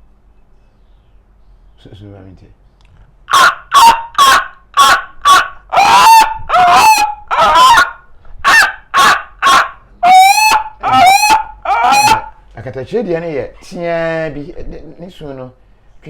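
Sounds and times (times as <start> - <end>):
man imitating animal calls: 5.7 - 8.0, 9.4 - 12.4.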